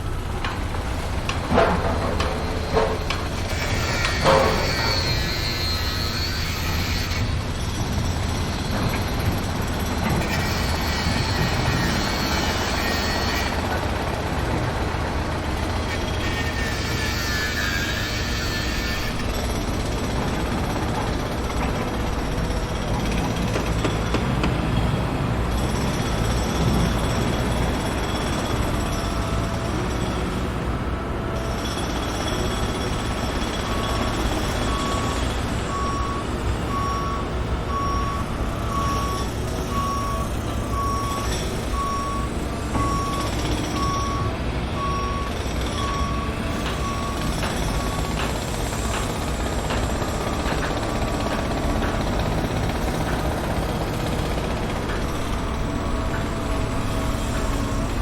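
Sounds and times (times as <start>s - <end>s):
heavy vehicle engine rumble: 0.0s - 5.0s, 7.2s - 17.1s, 32.9s - 58.0s
reversing alarm beeping: 1.5s - 13.8s, 15.3s - 24.2s, 31.4s - 58.0s.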